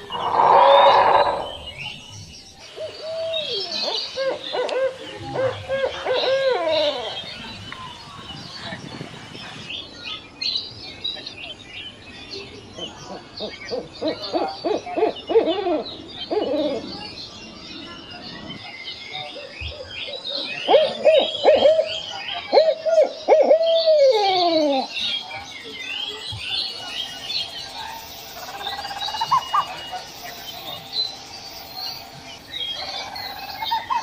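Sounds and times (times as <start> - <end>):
owl hooting: 0.0 - 2.0
small birds chirping: 0.0 - 34.0.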